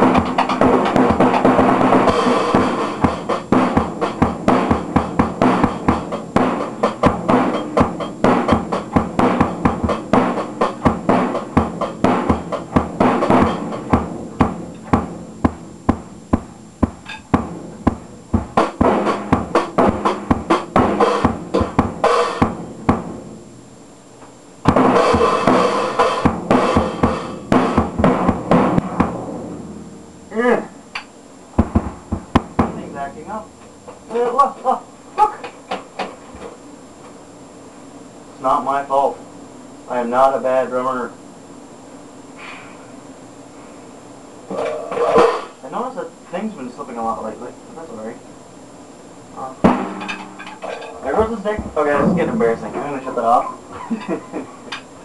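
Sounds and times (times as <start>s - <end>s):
drum kit playing: 0.0s - 23.5s, 24.6s - 30.7s, 31.6s - 33.6s, 49.6s - 53.4s.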